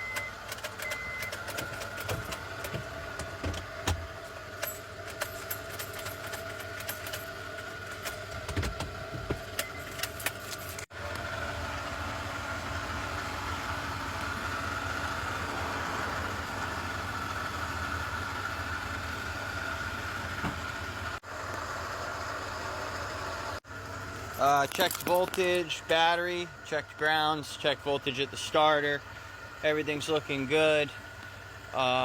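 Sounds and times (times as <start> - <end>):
metal clicks and clinks: 4.6 - 8.2, 24.3 - 25.6.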